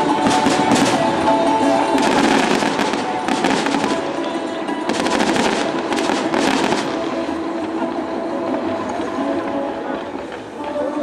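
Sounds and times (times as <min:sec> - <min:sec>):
fireworks crackling and popping: 0:00.0 - 0:11.0
music: 0:00.0 - 0:11.0.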